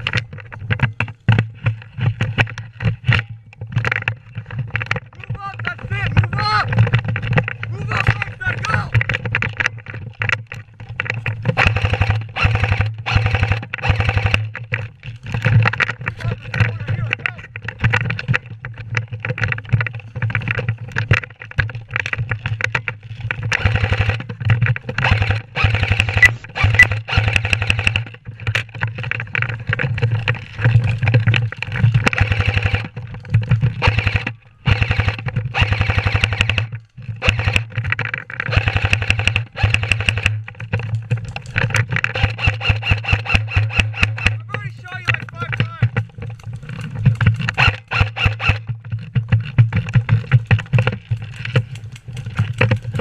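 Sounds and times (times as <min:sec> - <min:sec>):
motor hum: 0:00.0 - 0:18.8, 0:23.5 - 0:48.9
airsoft gun full-auto bursts: 0:11.6 - 0:14.3, 0:23.6 - 0:24.2, 0:25.0 - 0:27.9, 0:33.8 - 0:36.6, 0:37.2 - 0:37.6, 0:38.5 - 0:40.3.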